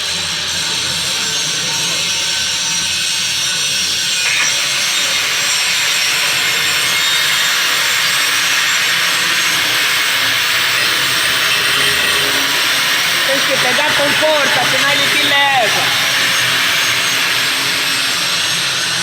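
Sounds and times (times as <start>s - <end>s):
angle grinder grinding steel: 4.1s - 19.0s.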